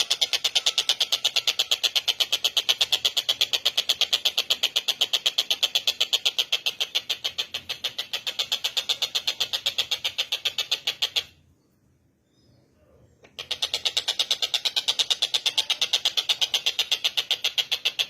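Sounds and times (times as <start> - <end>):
kingfisher high-pitched chatter: 13.3 - 18.0.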